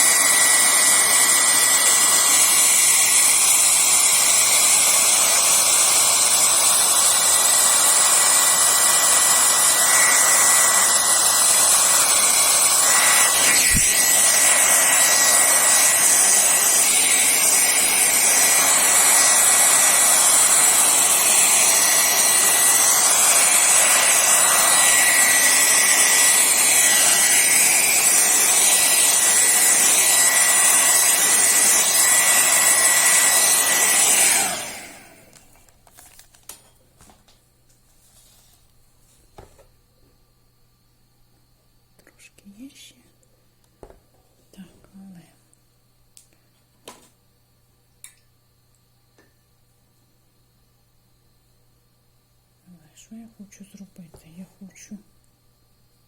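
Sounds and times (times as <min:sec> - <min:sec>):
hair dryer blowing: 0:00.0 - 0:35.6.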